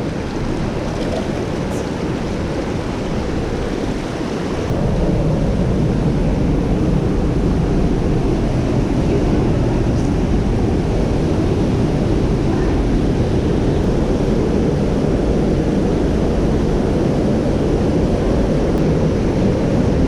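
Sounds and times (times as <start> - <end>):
creek water rushing: 0.0 - 20.0.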